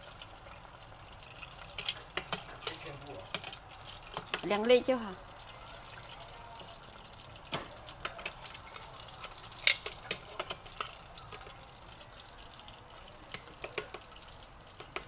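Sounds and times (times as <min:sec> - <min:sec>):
utensils and dishes clinking: 0:01.3 - 0:05.2, 0:07.4 - 0:11.7, 0:13.2 - 0:14.1.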